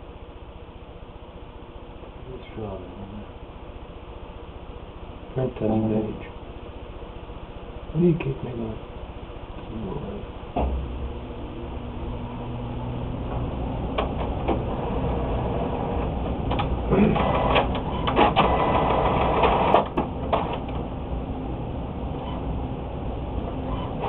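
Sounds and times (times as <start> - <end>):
printer mechanism whirring: 10.5 - 21.0
printer clicks: 16.5 - 20.8.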